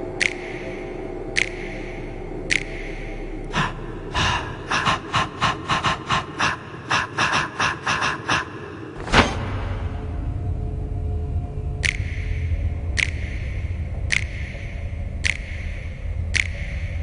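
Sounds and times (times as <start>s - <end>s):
breathy gasp-like vocal stabs: 3.5s - 9.0s.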